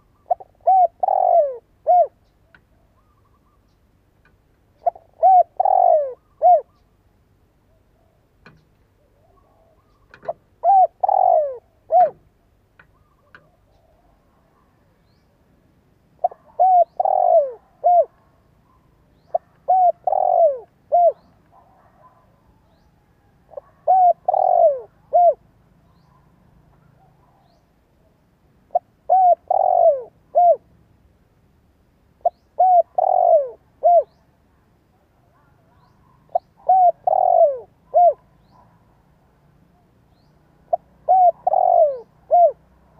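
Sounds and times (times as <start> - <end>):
dove cooing: 0.0 - 3.7, 4.7 - 7.0, 7.7 - 14.8, 16.2 - 27.6, 28.7 - 30.7, 32.2 - 34.3, 35.3 - 38.7, 40.6 - 42.7.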